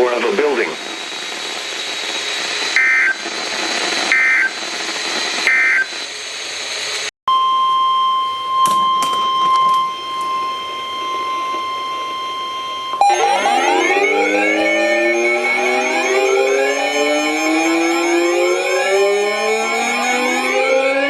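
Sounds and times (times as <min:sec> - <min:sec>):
radio hiss: 0:00.0 - 0:06.1
steady warning alarm tone: 0:02.7 - 0:03.3, 0:04.1 - 0:04.6, 0:05.4 - 0:06.0, 0:08.0 - 0:21.0
two-tone data bursts: 0:02.8 - 0:03.2, 0:04.1 - 0:04.6, 0:05.5 - 0:05.9, 0:12.8 - 0:18.9.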